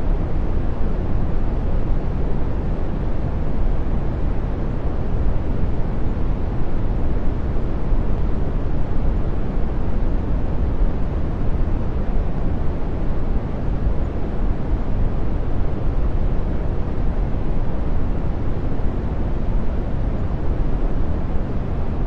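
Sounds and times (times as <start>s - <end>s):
brown noise hiss: 0.0s - 22.0s.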